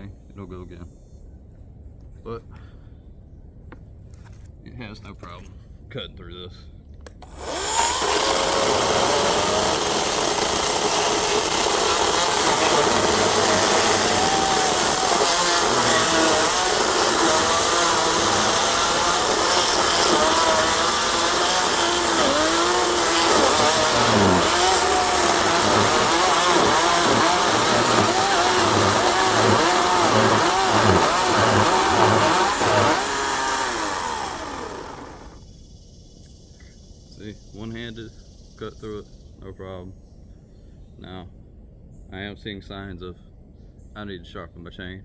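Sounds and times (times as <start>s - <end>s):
chainsaw cutting through log: 7.2s - 35.4s.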